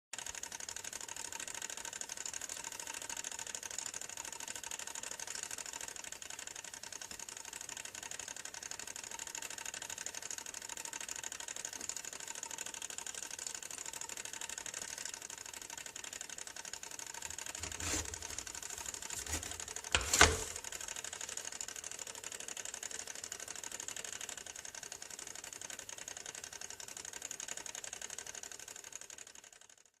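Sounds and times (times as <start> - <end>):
toaster ticking: 0.2 - 28.4
toaster mechanism clacking: 17.2 - 20.8.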